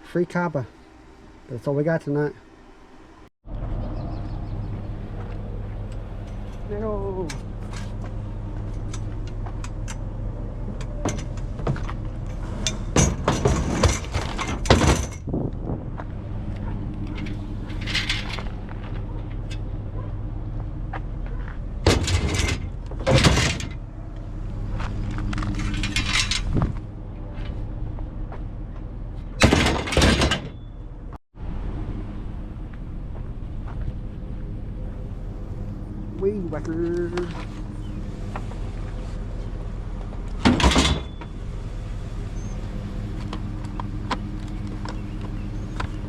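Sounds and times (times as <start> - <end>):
vehicle engine idling: 2.2 - 13.3, 15.5 - 29.4, 30.6 - 46.0
metal scrap clanking: 10.8 - 15.3, 17.1 - 18.6, 21.8 - 23.8, 25.4 - 26.6.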